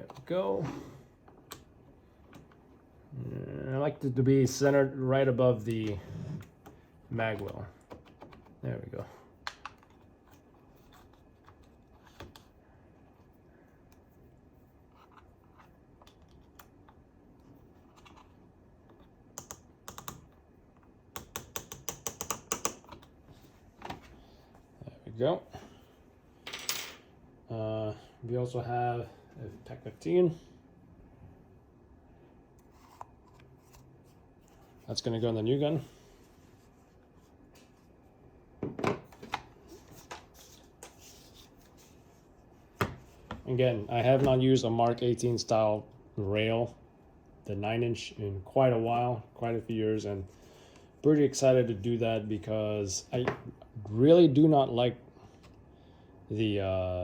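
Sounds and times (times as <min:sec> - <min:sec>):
plastic parts clicking and knocking: 0:21.2 - 0:23.1.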